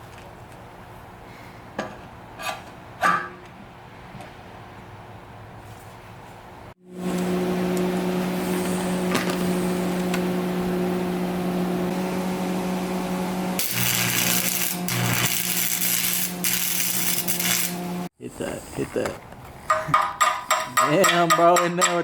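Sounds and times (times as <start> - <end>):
electrical hum: 6.9 - 19.8
arc welder crackling: 7.0 - 18.1.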